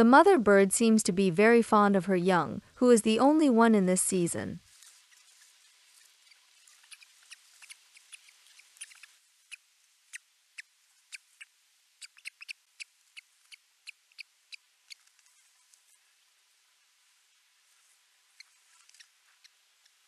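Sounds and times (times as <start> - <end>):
faint steady hiss: 2.2 - 20.0
birds peeping: 5.1 - 9.2.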